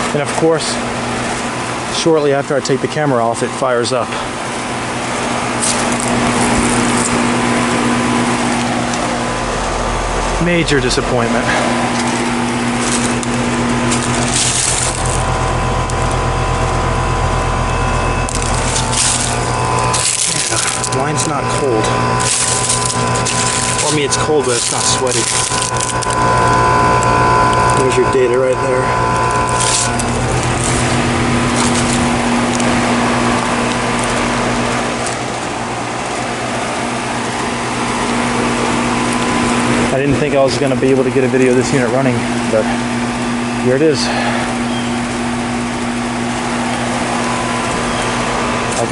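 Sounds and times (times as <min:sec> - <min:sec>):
air conditioning unit humming: 0:00.0 - 0:48.9
fan rushing: 0:00.0 - 0:48.9
rustling: 0:11.9 - 0:15.4, 0:18.2 - 0:27.8.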